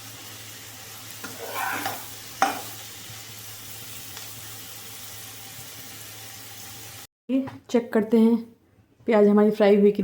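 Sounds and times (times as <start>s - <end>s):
onions sizzling in a pan: 0.0s - 7.1s
stirring scrape: 1.2s - 2.7s
sharp clack against pan: 2.4s - 2.7s.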